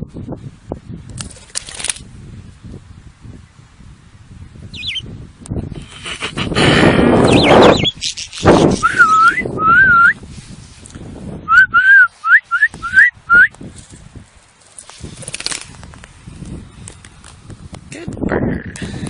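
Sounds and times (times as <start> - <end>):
person whistling short notes: 7.4 - 10.2, 11.5 - 13.5.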